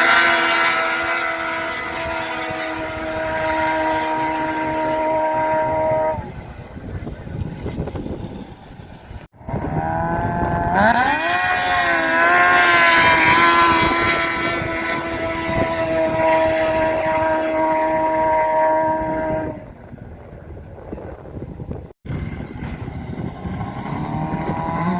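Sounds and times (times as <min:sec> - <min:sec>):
racing engine revving: 0:00.0 - 0:06.4, 0:09.4 - 0:19.6, 0:22.4 - 0:24.9.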